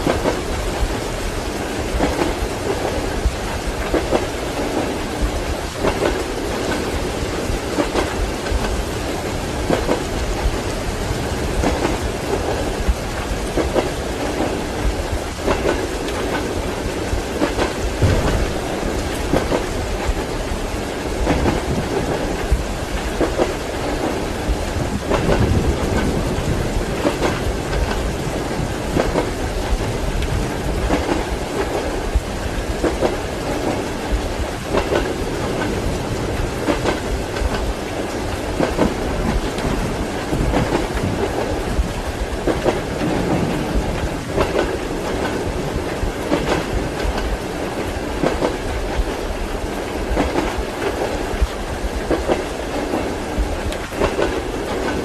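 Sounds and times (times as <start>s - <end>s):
rain hissing: 0.0s - 55.0s
train wheels clacking over rails: 0.0s - 55.0s.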